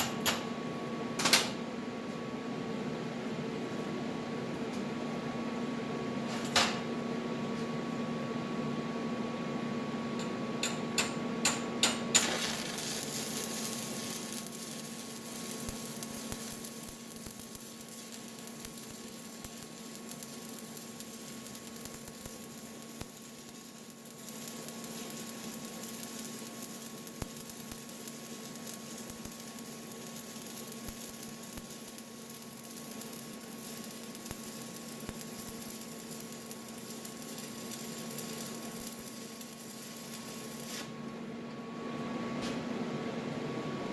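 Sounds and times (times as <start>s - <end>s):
welding arc crackling: 12.1s - 41.2s.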